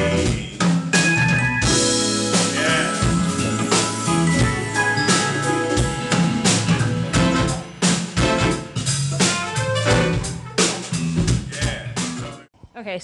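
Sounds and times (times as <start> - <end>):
drum kit beat: 0.0 - 12.5
low bass line: 1.4 - 10.4
sustained chords: 1.6 - 8.8.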